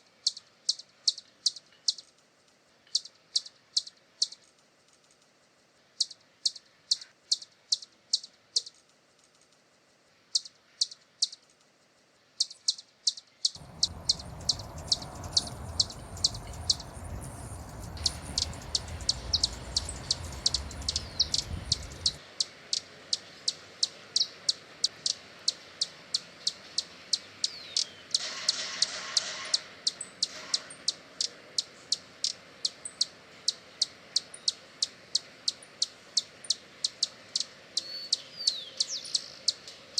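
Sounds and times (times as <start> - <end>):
hummingbird high chip notes: 13.6 - 22.2
low rumbling noise: 13.6 - 22.2.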